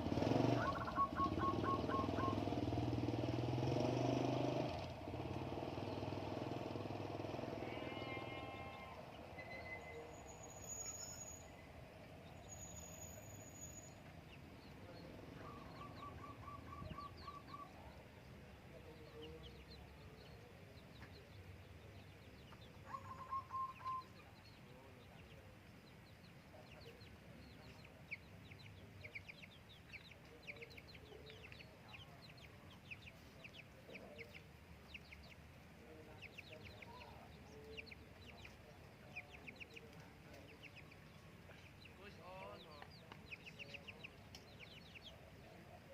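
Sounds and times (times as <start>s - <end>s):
dove calling: 0.0s - 3.0s, 13.9s - 21.8s, 22.4s - 25.6s.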